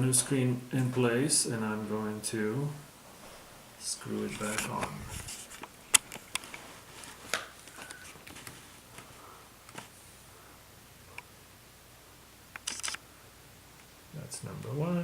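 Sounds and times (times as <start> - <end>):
light scraping: 4.1 - 5.7.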